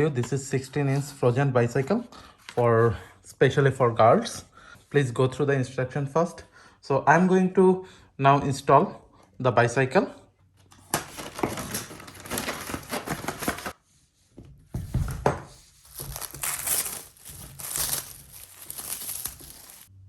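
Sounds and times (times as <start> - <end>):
packaging crinkling: 10.9 - 13.7, 15.8 - 19.9.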